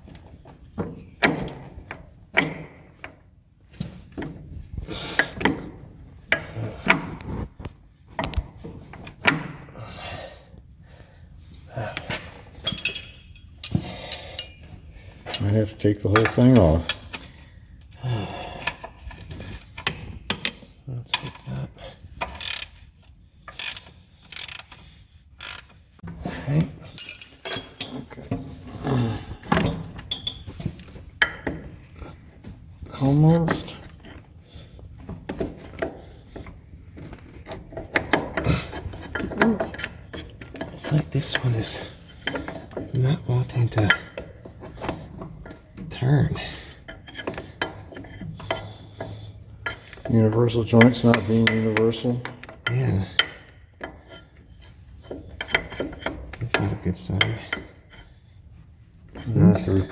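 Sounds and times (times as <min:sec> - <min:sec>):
ringing metal clatter: 0:12.6 - 0:17.2, 0:26.9 - 0:27.9
hand tools knocking on metal: 0:12.6 - 0:17.3.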